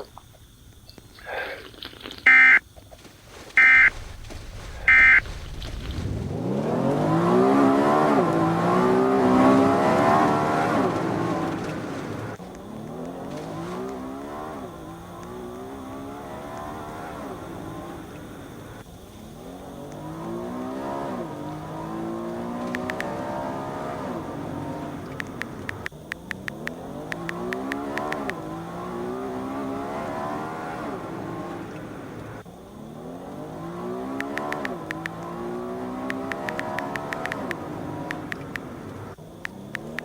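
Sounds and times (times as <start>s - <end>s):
data-burst alert tones: 2.3s - 2.6s, 3.6s - 4.0s, 4.9s - 5.3s
engine revving up and down: 3.3s - 40.0s.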